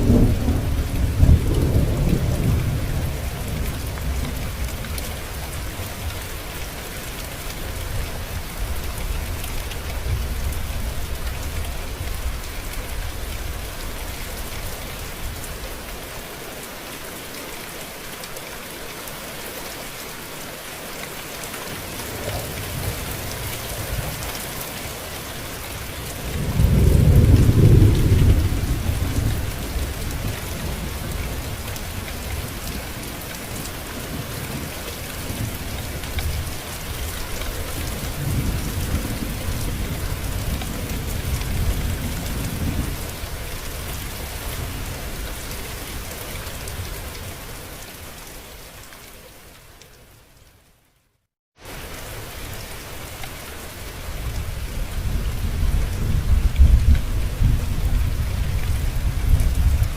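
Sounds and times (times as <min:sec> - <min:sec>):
thunder rumbling: 0:00.0 - 0:05.6, 0:22.0 - 0:45.3, 0:54.2 - 0:59.9
steady rain falling: 0:00.0 - 0:59.9.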